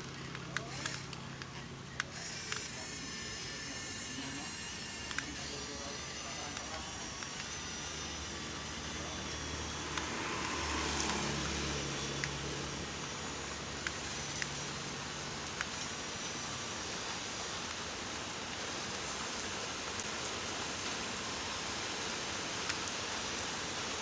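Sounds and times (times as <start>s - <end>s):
toy electric motors whirring: 0.0s - 24.0s
sharp clicks: 0.2s - 4.4s, 5.0s - 16.5s.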